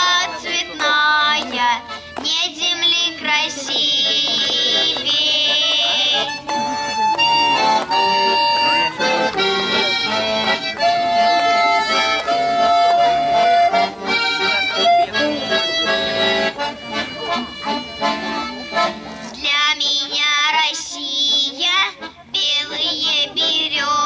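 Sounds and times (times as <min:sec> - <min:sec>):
instrumental melody over chords: 0:04.8 - 0:19.2.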